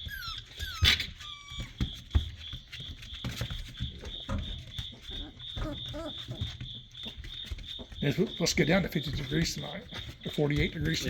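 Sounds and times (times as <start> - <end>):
puppy whining: 0.0 - 2.2, 3.3 - 7.2
puppies scuffling and knocking: 0.0 - 11.0.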